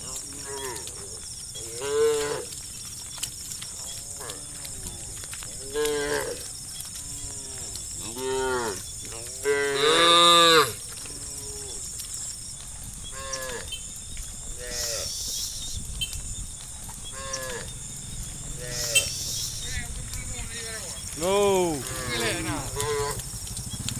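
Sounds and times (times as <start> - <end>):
cattle mooing: 0.1 - 2.6, 3.7 - 11.9, 13.1 - 13.7, 14.5 - 15.1, 17.1 - 20.0, 21.1 - 23.2.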